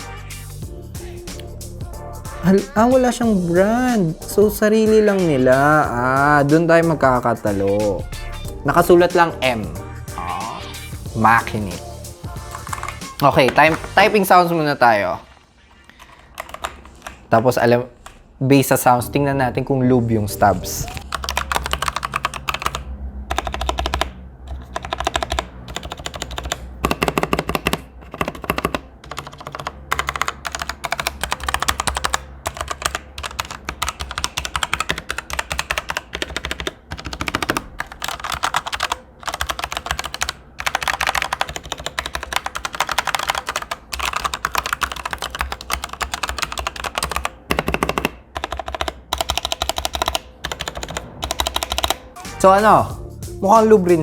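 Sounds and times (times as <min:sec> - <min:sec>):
fast mechanical keyboard typing: 0:02.4 - 0:08.0, 0:11.3 - 0:14.1, 0:15.8 - 0:17.8, 0:20.8 - 0:52.2.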